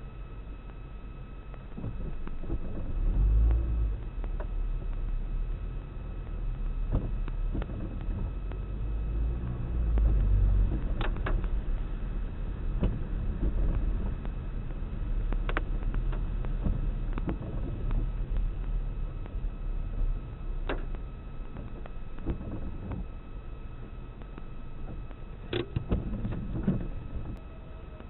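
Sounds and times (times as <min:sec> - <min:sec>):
car tyre and engine rumble: 0:00.0 - 0:28.0.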